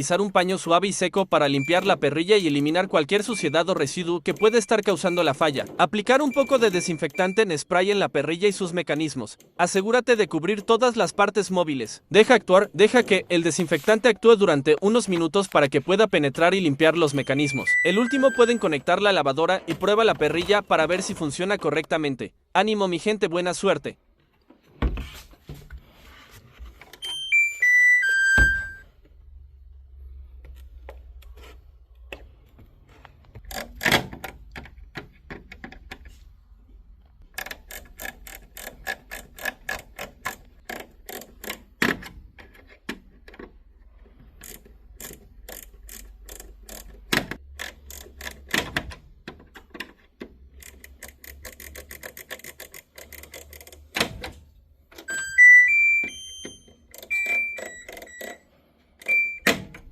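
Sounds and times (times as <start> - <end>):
short beeps: 1.5 - 1.9, 3.2 - 3.7, 4.3 - 5.4, 6.3 - 7.5, 17.0 - 18.8, 27.0 - 28.9, 55.1 - 58.4
falling four-note beep: 17.1 - 18.7, 27.0 - 28.8.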